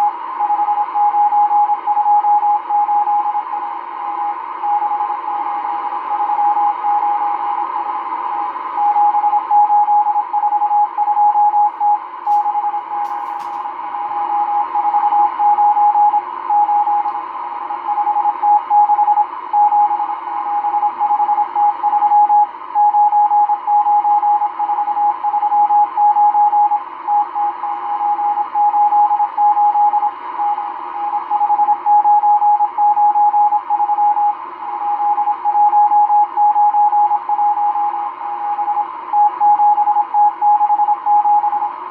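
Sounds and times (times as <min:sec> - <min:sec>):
morse code beeps: 0:08.9 - 0:13.7, 0:17.8 - 0:37.9.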